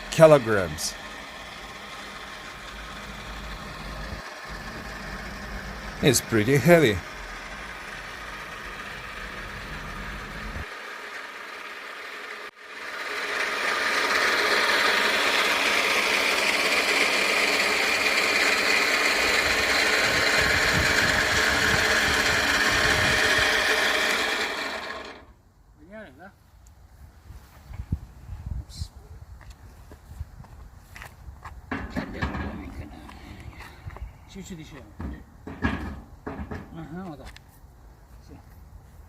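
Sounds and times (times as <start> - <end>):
engine humming: 0.0 - 25.5.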